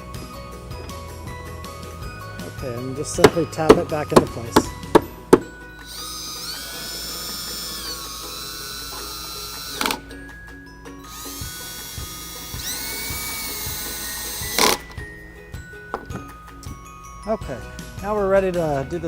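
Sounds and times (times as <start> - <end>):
cordless drill whining: 0.8 - 16.7
drill click: 3.2 - 10.2, 11.0 - 15.1.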